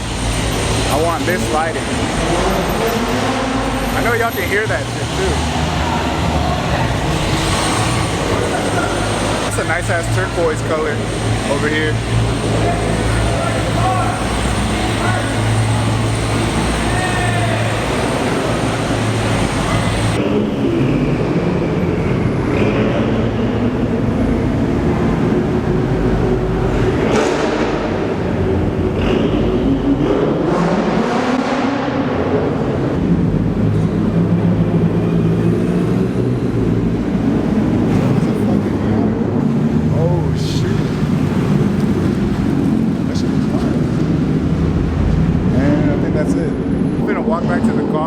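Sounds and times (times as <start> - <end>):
car engines revving: 0.0 - 48.0
people talking: 0.8 - 20.2, 37.9 - 39.0, 39.9 - 41.0, 43.0 - 44.1, 45.5 - 48.0.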